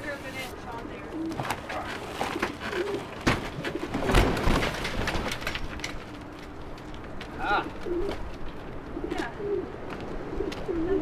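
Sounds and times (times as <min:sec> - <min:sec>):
pigeons cooing: 0:00.5 - 0:04.2, 0:07.3 - 0:11.0.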